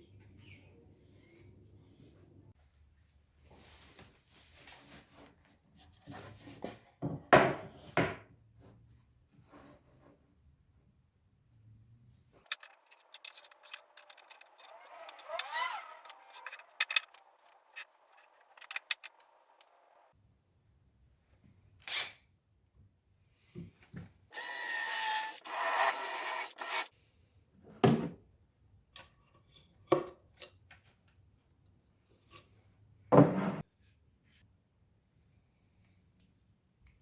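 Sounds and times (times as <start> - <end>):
tools clicking and knocking: 12.5 - 19.3
rasping tool noise: 12.5 - 20.1, 24.4 - 26.9.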